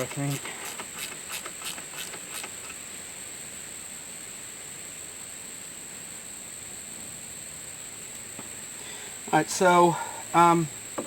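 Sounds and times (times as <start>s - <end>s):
hand tool clicking: 0.0s - 2.8s
high-pitched hiss: 0.0s - 11.0s.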